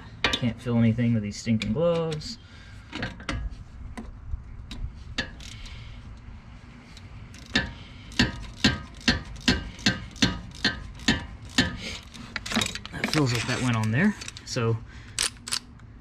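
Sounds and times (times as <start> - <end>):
ratchet clicking: 5.2 - 5.8, 6.9 - 14.5.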